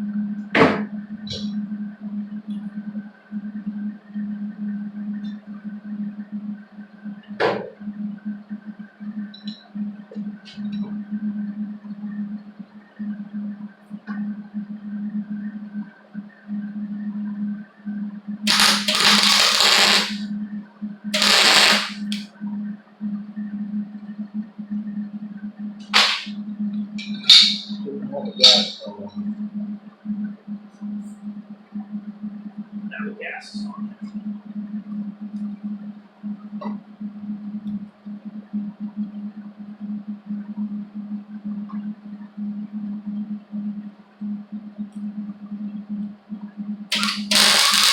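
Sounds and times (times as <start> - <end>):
low hum: 18.3 - 20.6, 21.2 - 32.9
welder arcing: 18.5 - 20.2, 21.2 - 22.2, 26.0 - 26.3, 46.9 - 47.9.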